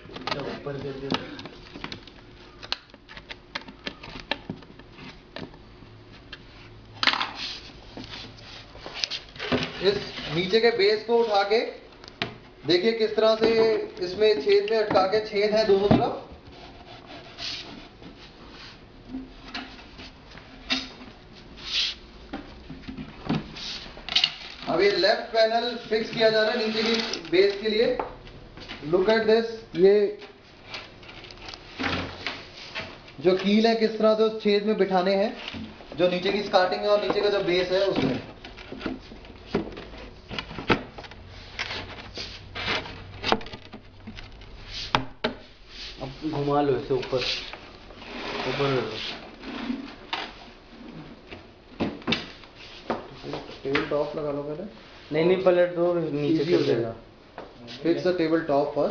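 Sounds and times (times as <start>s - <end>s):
wooden panels rubbing and scraping: 26.2s - 27.9s, 35.3s - 51.1s.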